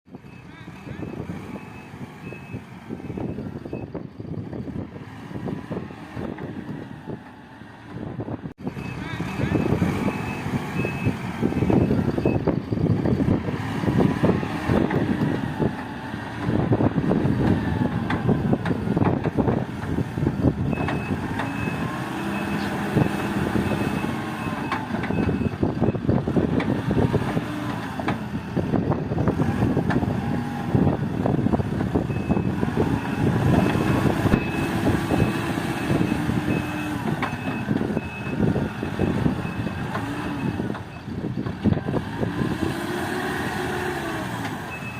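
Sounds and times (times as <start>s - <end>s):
diesel engine under load: 0.0s - 44.9s
reversing alarm beeping: 44.7s - 44.9s.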